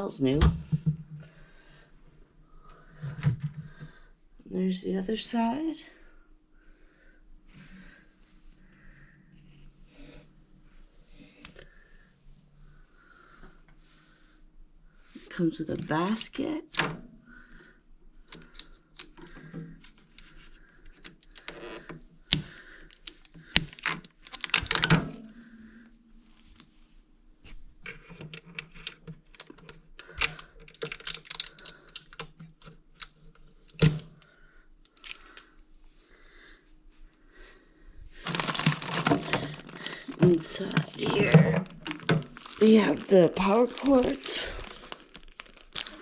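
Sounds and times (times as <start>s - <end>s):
handling clicks and rustling: 27.8s - 34.2s, 34.8s - 35.5s, 38.2s - 46.0s.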